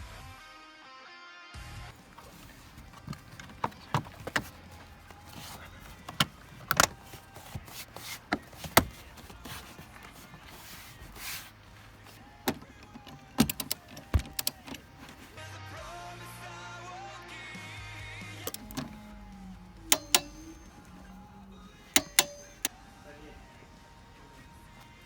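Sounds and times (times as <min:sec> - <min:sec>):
seat belt parts clicking: 0:02.0 - 0:15.4, 0:18.5 - 0:25.0
low steady hum: 0:18.5 - 0:25.0.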